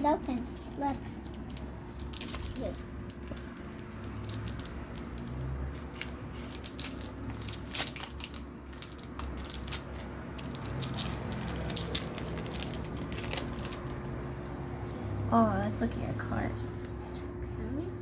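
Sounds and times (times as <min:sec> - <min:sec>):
foil wrapper crinkling: 0:00.0 - 0:14.1
cards rustling: 0:00.1 - 0:14.2.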